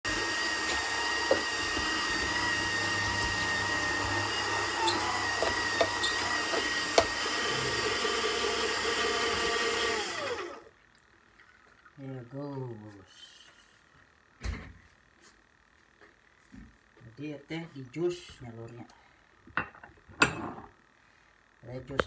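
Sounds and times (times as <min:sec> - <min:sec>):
juicer motor whining: 0:00.0 - 0:10.7.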